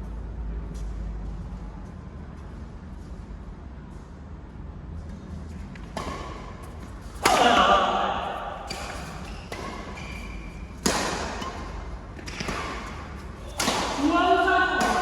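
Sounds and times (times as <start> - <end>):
racket hitting shuttlecock: 5.8 - 15.0
players' voices: 7.2 - 8.6, 13.4 - 15.0.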